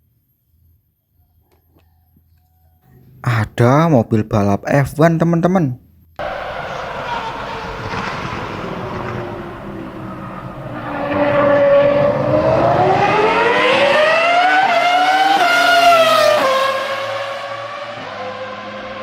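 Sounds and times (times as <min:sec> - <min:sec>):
race car engine revving: 0:06.2 - 0:19.0.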